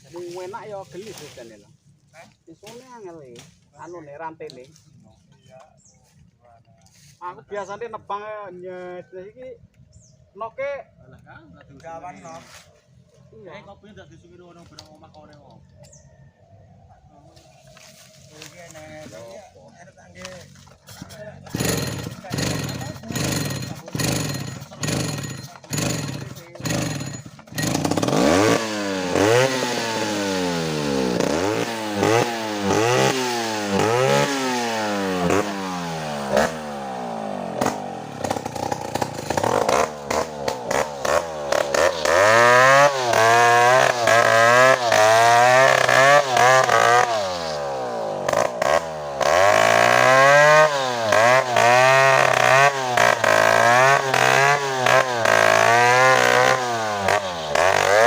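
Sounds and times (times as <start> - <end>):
chainsaw engine revving: 20.1 - 58.0.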